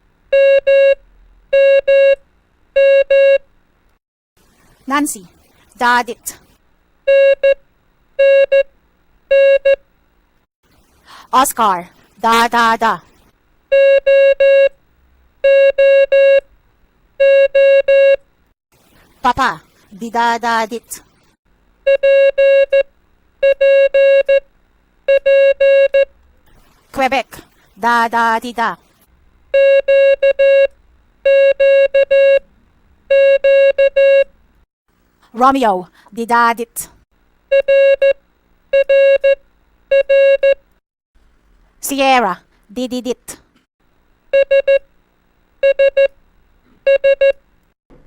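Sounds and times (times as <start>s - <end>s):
morse code tone: 0.4s - 2.2s, 2.8s - 3.4s, 13.7s - 14.8s, 15.4s - 16.4s, 21.9s - 24.4s, 25.1s - 26.1s, 29.6s - 32.5s, 33.1s - 34.4s, 38.8s - 40.6s, 44.4s - 44.8s, 45.6s - 46.1s, 46.9s - 47.4s.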